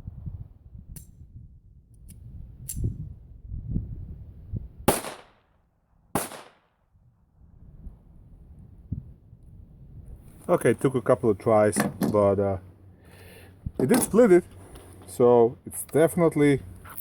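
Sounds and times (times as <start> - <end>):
pistol shots: 4.9 - 5.4, 6.1 - 6.7.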